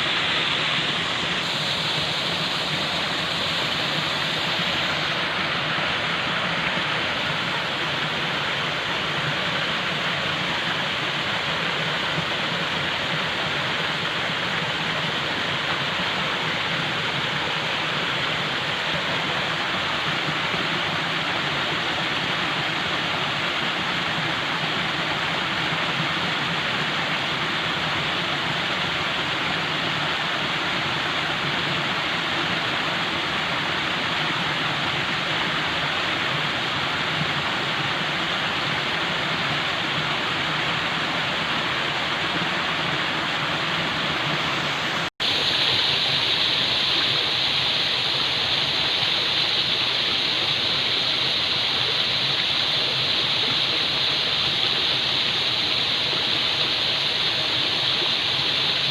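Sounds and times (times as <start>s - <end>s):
falling water rushing: 0.0s - 58.9s.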